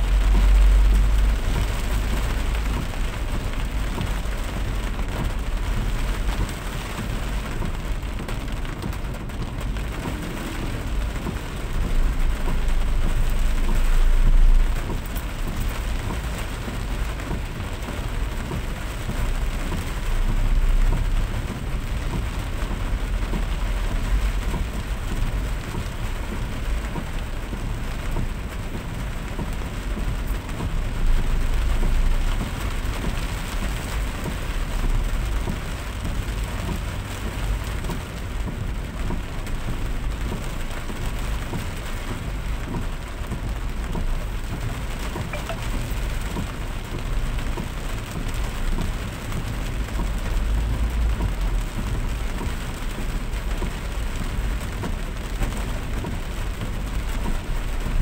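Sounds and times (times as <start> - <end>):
steady rain: 0.0 - 58.0.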